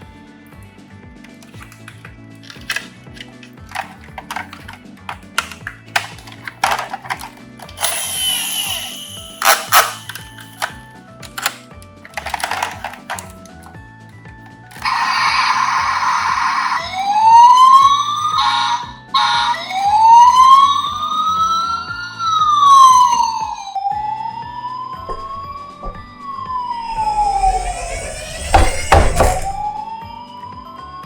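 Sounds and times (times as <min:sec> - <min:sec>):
emergency vehicle siren wailing: 0:06.6 - 0:10.8, 0:14.6 - 0:31.0
sharp knocks: 0:25.1 - 0:29.8
short noisy blast: 0:25.1 - 0:30.0.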